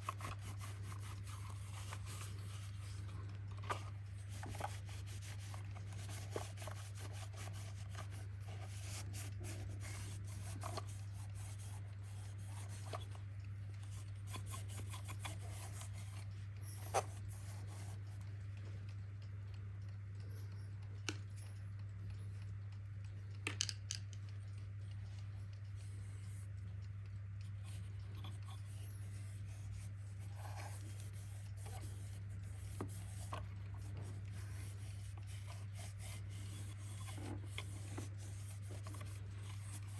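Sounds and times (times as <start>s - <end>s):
rubbing and handling noises: 0.0s - 19.2s, 27.4s - 39.9s
steady low hum: 0.0s - 39.9s
light clicks: 7.6s - 39.9s.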